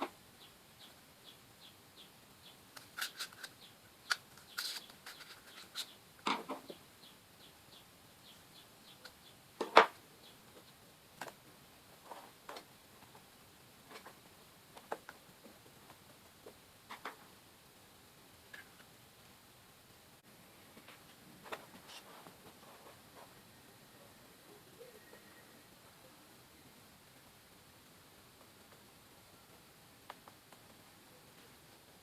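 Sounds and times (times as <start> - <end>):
cardboard and craft materials handled: 2.8 - 6.6.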